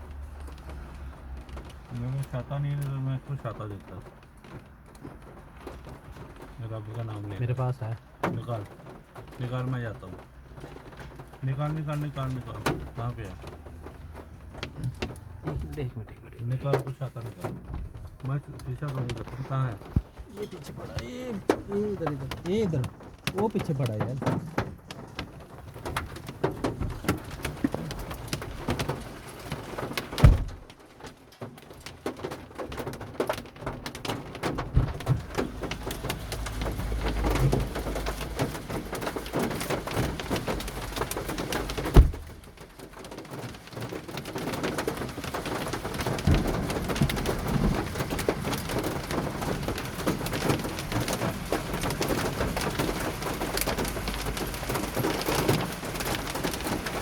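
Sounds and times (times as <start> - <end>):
hail and rain drumming on car roof: 0.0 - 57.0
heavy thumps: 16.8 - 29.0, 30.0 - 30.8, 34.6 - 38.4, 41.5 - 42.5.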